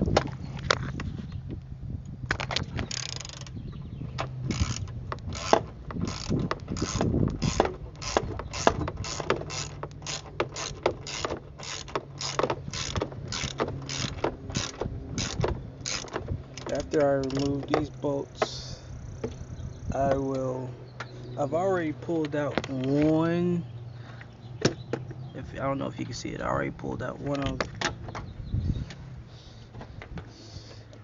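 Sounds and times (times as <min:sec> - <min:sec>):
ratchet wrench clicking: 0:02.8 - 0:03.6, 0:04.5 - 0:17.7.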